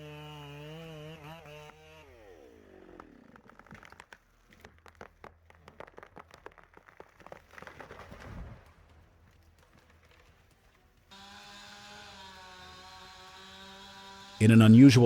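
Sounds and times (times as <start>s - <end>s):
chainsaw engine winding down: 0.0s - 3.7s, 11.1s - 15.0s
wood crackling and snapping: 2.8s - 11.1s.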